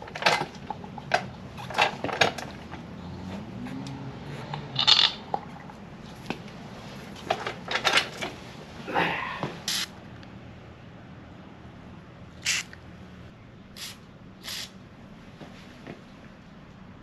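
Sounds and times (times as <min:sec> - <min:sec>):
metal tools clinking and knocking: 0:04.8 - 0:05.4, 0:07.3 - 0:08.3.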